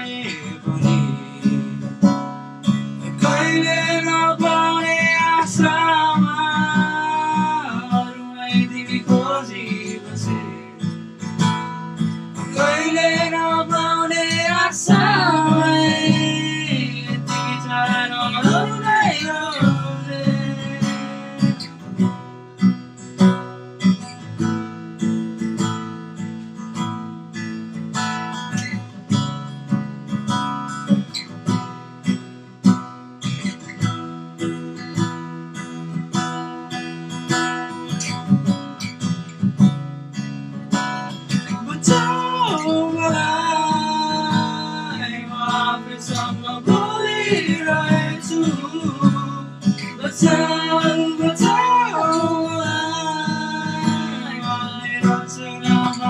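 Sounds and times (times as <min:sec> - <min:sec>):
person singing: 0:00.0 - 0:01.8, 0:03.0 - 0:10.8, 0:12.5 - 0:21.9, 0:41.5 - 0:56.0
acoustic guitar strumming: 0:00.0 - 0:56.0.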